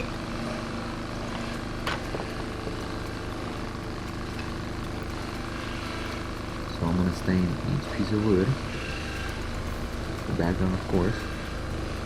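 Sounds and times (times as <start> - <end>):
motor hum: 0.0 - 12.0.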